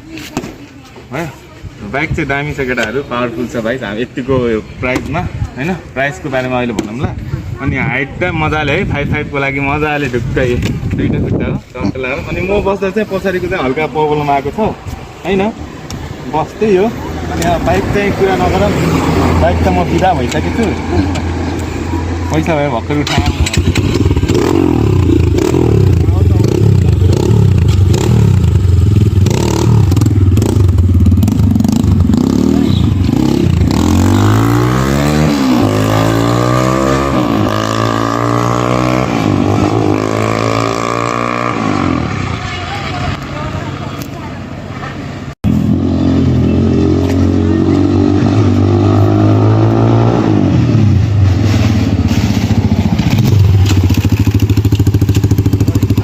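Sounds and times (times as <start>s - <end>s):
dirt bike engine revving: 17.3s - 42.7s, 45.4s - 56.0s
dirt bike engine idling: 52.8s - 56.0s.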